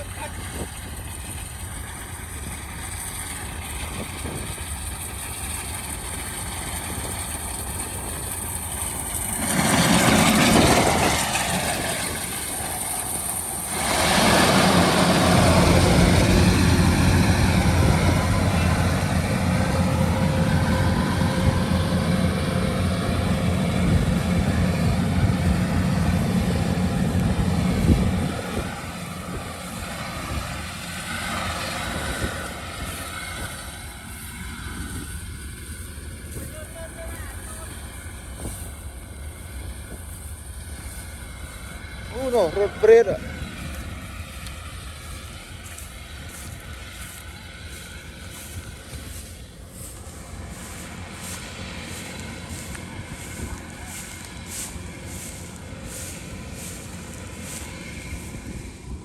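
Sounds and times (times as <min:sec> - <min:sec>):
combine harvester engine humming: 0:00.0 - 0:59.0.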